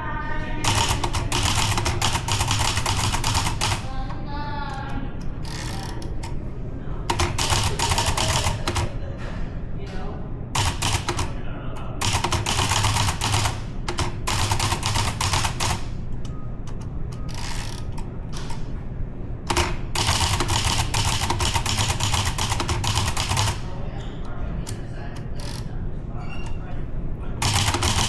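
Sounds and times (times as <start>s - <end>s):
typewriter keys being struck: 0.6s - 3.9s, 7.1s - 9.0s, 10.6s - 11.4s, 12.0s - 16.0s, 19.5s - 23.6s, 27.4s - 28.0s.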